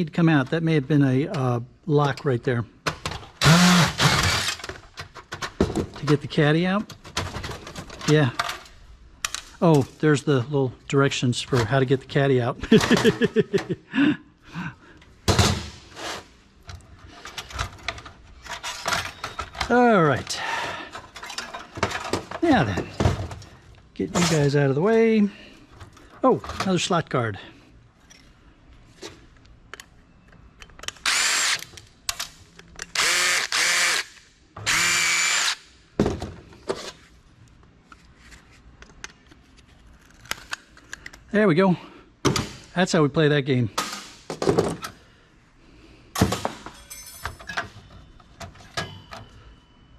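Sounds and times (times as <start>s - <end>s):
power drill running: 3.4s - 4.6s, 31.0s - 31.6s, 32.9s - 35.6s
metal parts knocking and clicking: 46.2s - 49.2s.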